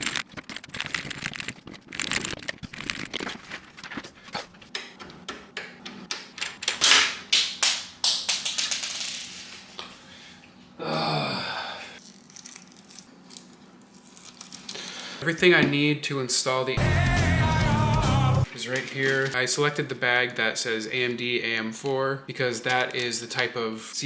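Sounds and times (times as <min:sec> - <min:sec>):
screws and case parts clicking: 0:00.0 - 0:03.5.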